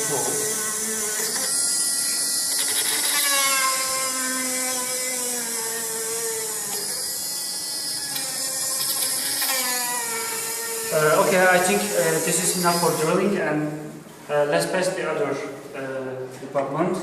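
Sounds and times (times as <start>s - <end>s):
drilling machine high whine: 0.0s - 13.4s.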